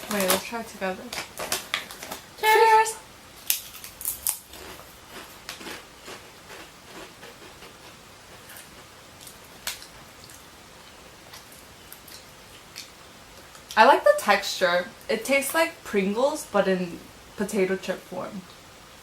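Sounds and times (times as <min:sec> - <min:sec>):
potato chips crunching: 0:03.4 - 0:10.4.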